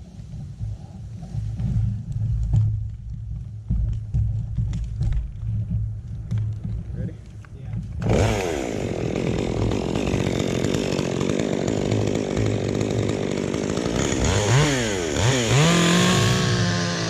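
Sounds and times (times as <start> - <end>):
chainsaw cutting at full throttle: 8.0 - 17.0.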